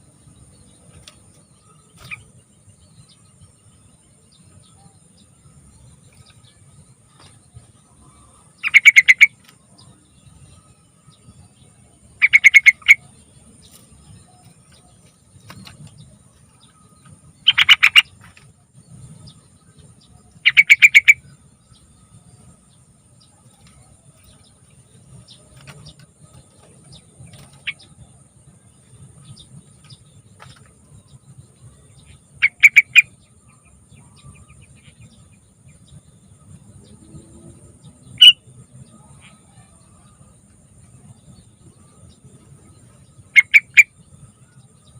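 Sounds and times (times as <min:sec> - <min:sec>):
bird calling: 0:04.4 - 0:10.7, 0:12.1 - 0:22.5, 0:25.2 - 0:35.4, 0:37.9 - 0:40.2, 0:41.0 - 0:44.9.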